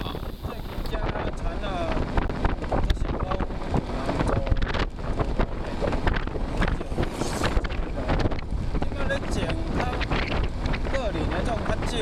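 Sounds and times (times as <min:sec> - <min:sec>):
scooter motor: 0:00.0 - 0:01.0
wind buffeting microphone: 0:00.0 - 0:12.0.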